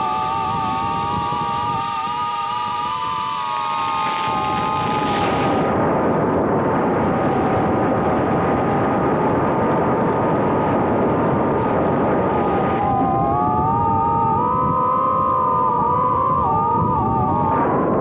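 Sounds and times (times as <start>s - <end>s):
quadcopter motors whining: 0.0s - 5.7s, 12.4s - 18.0s
wind and propeller rush: 0.0s - 18.0s.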